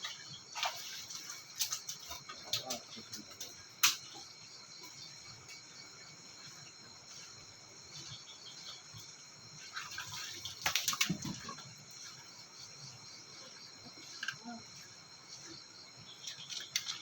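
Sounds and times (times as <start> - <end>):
water splashing: 0.0 - 4.2, 9.6 - 17.0
insects chirring: 0.0 - 17.0.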